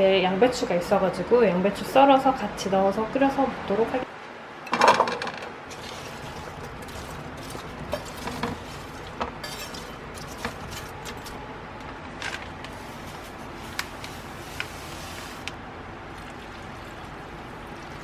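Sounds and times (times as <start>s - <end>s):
kitchen utensils clattering: 4.7s - 11.4s.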